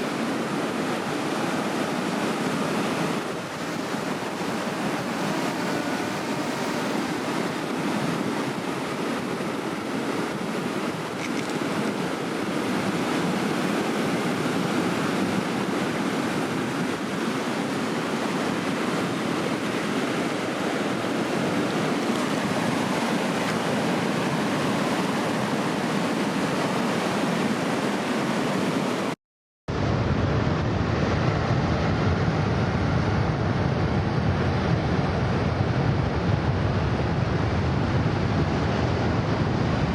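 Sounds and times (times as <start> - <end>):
wind buffeting microphone: 0.0 - 29.1, 29.7 - 39.9
ocean surf breaking: 0.0 - 29.2.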